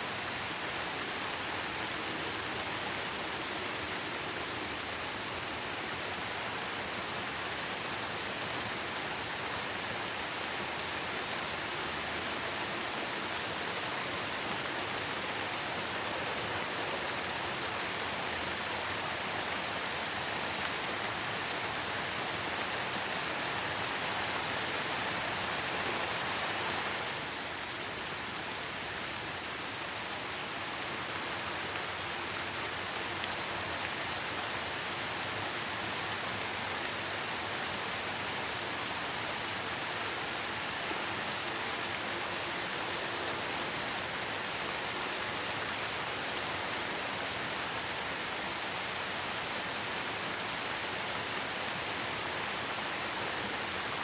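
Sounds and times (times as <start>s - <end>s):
steady rain falling: 0.0s - 54.0s.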